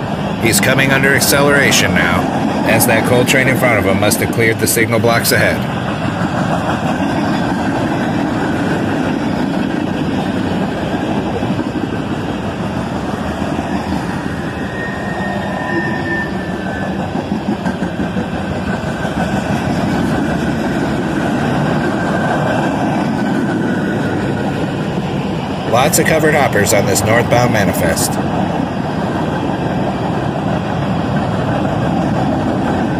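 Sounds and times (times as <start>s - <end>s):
train wheels rumbling and clattering: 0.0s - 32.9s
faint wheel squeal: 14.3s - 17.1s.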